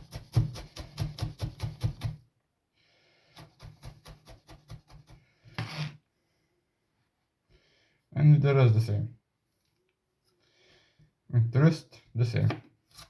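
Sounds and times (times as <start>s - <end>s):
knife chopping on wooden board: 0.0s - 2.2s
knife scrape: 5.5s - 6.0s.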